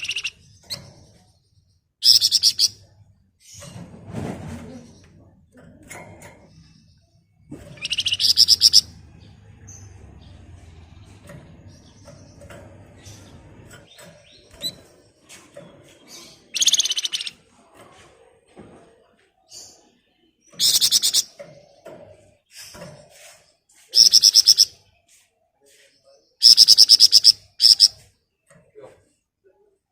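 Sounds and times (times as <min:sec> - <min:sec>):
songbird singing in rapid bursts: 0:00.0 - 0:00.9, 0:01.6 - 0:02.9, 0:06.5 - 0:15.0, 0:15.6 - 0:17.5, 0:20.4 - 0:21.8, 0:23.1 - 0:28.4.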